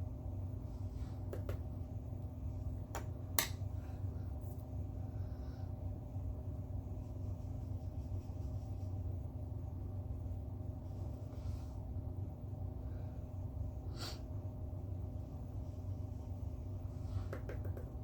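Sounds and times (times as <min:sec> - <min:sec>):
steady low hum: 0:00.0 - 0:18.0
makeup and brush clicks and taps: 0:01.3 - 0:01.7, 0:17.2 - 0:18.0.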